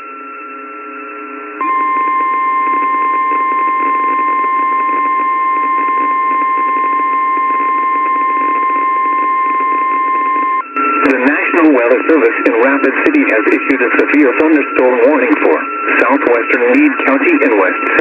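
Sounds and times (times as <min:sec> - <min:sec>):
steady alarm tone: 0:00.0 - 0:18.0
radio hiss: 0:10.9 - 0:18.0.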